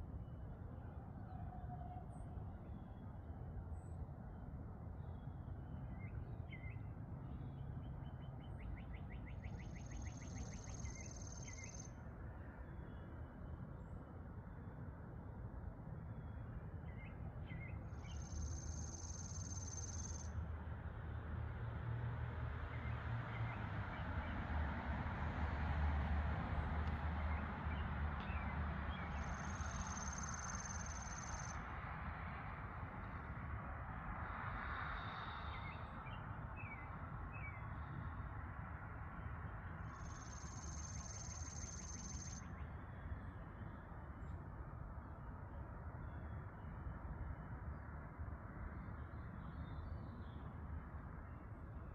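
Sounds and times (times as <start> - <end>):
bird chirps: 40.0 - 42.6.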